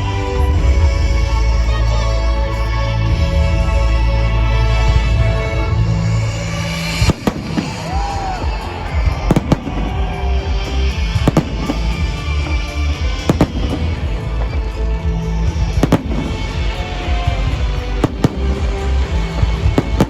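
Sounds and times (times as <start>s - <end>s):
music: 0.0s - 20.0s
fireworks bursting: 4.9s - 20.0s.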